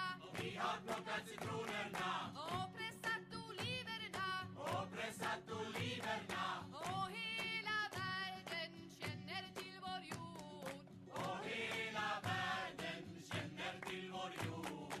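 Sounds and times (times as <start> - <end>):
song with singing over a beat: 4.6 - 7.0, 11.2 - 15.0.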